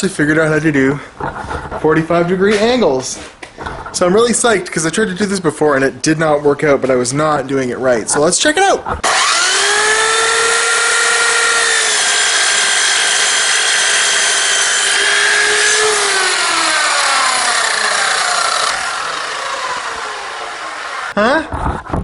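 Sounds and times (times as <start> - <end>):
miter saw cutting wood: 9.0 - 21.2.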